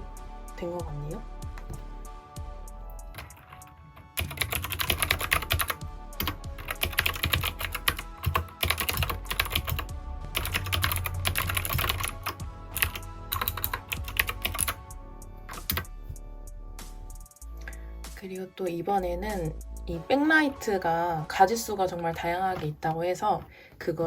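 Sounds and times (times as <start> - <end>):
soft background music: 0.0 - 24.0
mechanical keyboard typing: 3.1 - 14.8, 15.6 - 15.9.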